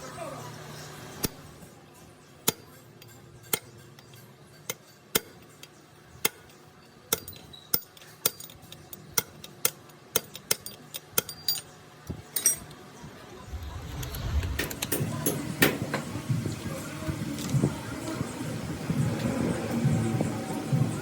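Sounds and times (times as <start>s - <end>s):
metal tools clinking: 6.4s - 12.8s, 14.4s - 16.0s.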